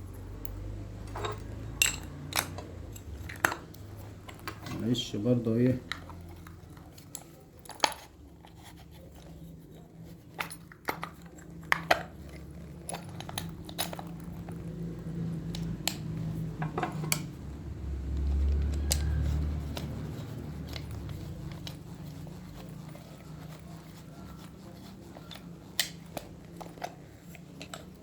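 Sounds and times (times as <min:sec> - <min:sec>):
metal parts clicking and knocking: 0:00.4 - 0:09.3, 0:10.0 - 0:23.0.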